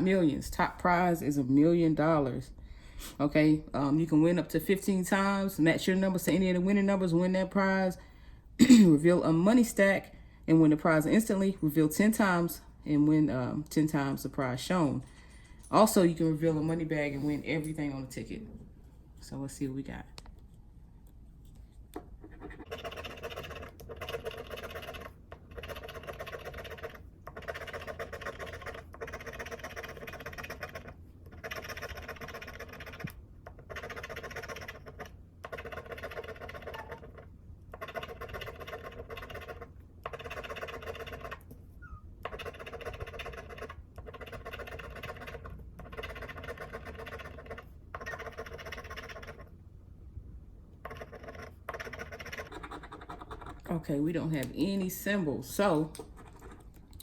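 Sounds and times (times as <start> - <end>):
steady low hum: 0.0 - 57.0
scratching a paper ticket: 22.3 - 41.5, 42.2 - 49.5, 50.8 - 53.6.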